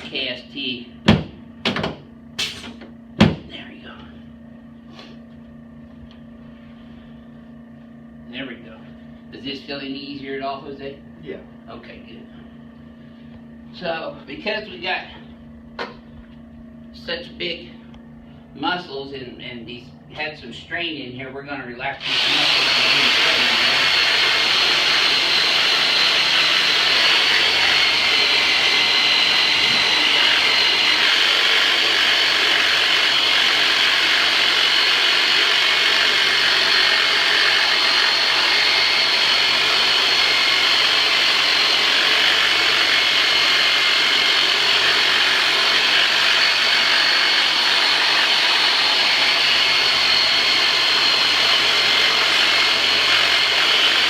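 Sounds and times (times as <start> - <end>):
electric massager motor whining: 22.0 - 54.0.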